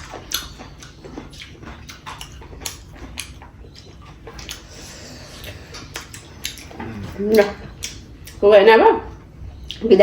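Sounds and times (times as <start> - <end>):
chewing and lip smacks: 0.0 - 8.4, 9.2 - 9.9.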